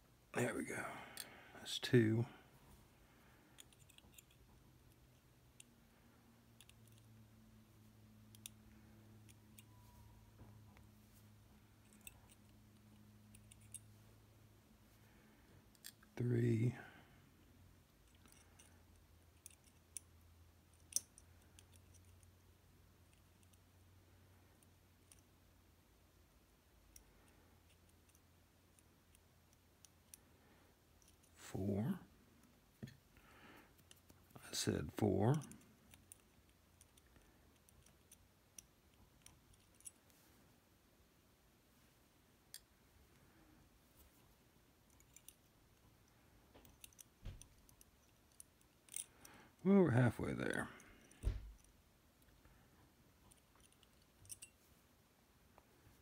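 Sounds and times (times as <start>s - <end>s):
small metal clicks of lock pins: 3.5s - 5.7s, 6.5s - 7.1s, 11.8s - 13.9s, 18.0s - 22.3s, 31.0s - 31.4s, 35.3s - 40.1s, 44.9s - 49.6s, 53.2s - 54.6s
small metal clicks of a lock: 20.7s - 22.3s, 46.5s - 49.2s, 53.3s - 54.6s.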